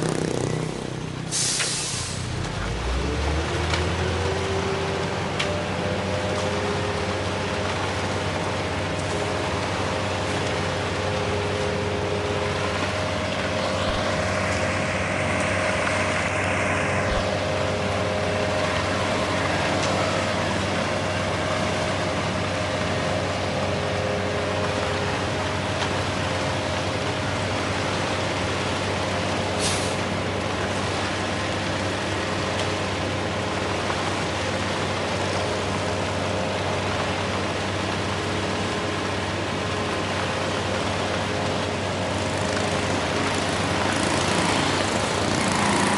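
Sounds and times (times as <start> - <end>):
diesel truck engine running: 0.0 - 45.9
air hissing: 1.3 - 2.3.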